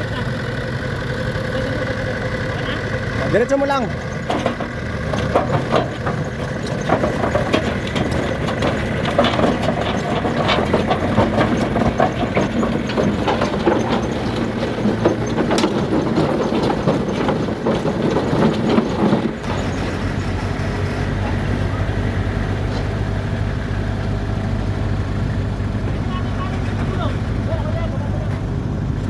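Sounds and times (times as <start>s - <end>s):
diesel engine running: 0.0s - 29.0s
metal clanks and knocks: 1.7s - 23.3s.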